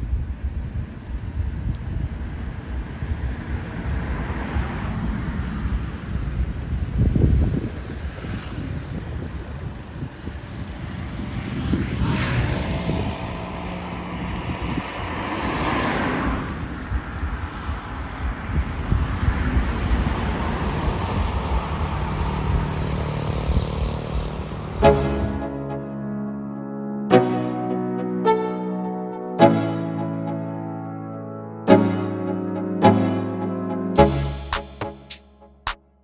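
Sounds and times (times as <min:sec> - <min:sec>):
wind buffeting microphone: 0:00.0 - 0:24.8
music: 0:24.8 - 0:36.0.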